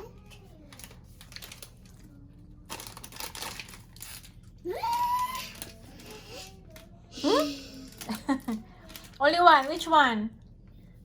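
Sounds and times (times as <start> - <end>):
packaging crinkling and rustling: 0.3 - 6.9, 7.8 - 10.0
toddler vocal sound: 4.7 - 7.7.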